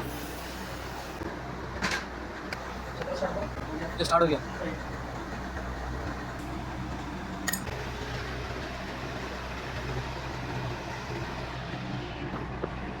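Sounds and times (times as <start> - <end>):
low mechanical hum: 0.0 - 13.0
sharp click: 7.5 - 7.7.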